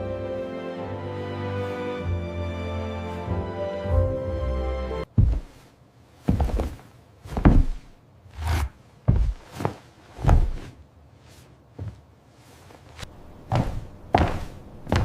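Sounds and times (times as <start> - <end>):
music: 0.0 - 5.1
slow heavy footsteps: 5.0 - 15.0.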